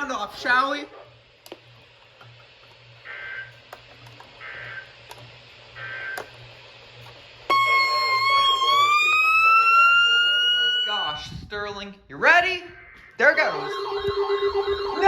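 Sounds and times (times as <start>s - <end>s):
low electrical hum: 0.0s - 15.0s
siren-like alarm tone: 4.4s - 4.9s, 7.5s - 11.4s, 12.7s - 15.0s.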